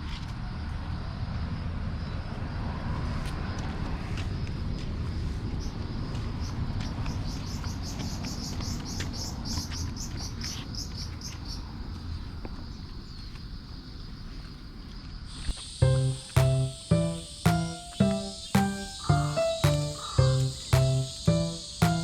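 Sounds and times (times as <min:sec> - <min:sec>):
high rhythmic chirping: 0:15.8 - 0:22.0.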